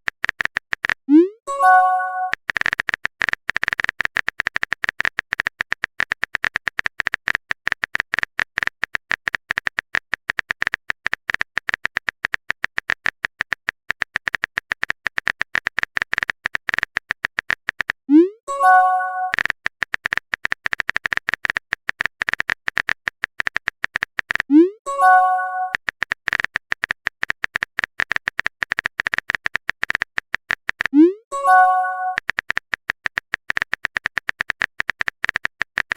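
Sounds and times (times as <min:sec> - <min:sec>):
phone keyboard typing clicks: 0:00.0 - 0:35.9
message sent alert tone: 0:01.1 - 0:02.4, 0:18.1 - 0:19.4, 0:24.5 - 0:25.8, 0:31.0 - 0:32.2.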